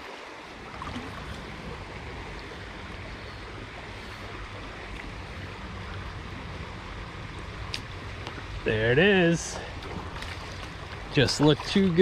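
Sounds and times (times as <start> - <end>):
low water rumble: 0.0 - 12.0
stream water rushing: 0.0 - 12.0.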